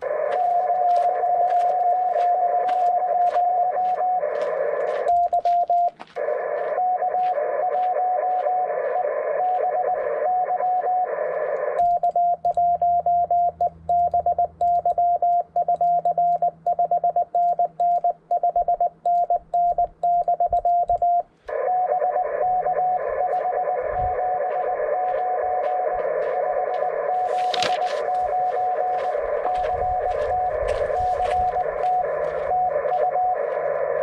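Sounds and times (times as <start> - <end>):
morse code tone: 0.0 - 11.2, 11.8 - 34.0
radio receiver hiss: 21.5 - 34.0.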